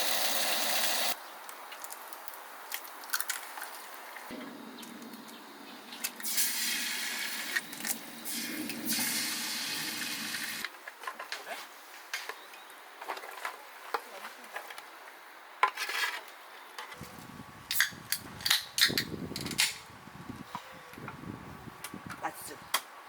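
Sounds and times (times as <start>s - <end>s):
water pouring in a stream: 0.0s - 1.2s, 6.2s - 10.6s.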